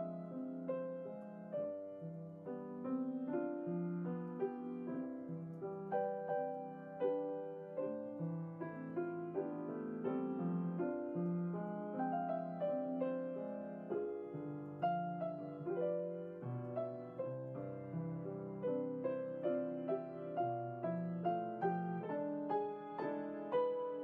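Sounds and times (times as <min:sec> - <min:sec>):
gentle solo piano: 0:00.0 - 0:24.0.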